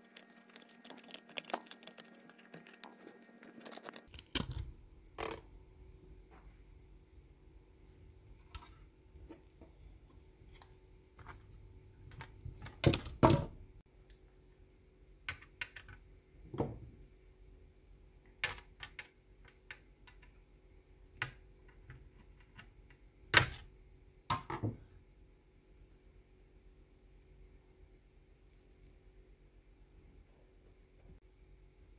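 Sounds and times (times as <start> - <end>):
clicks and knocks of small parts: 18.4 - 20.4.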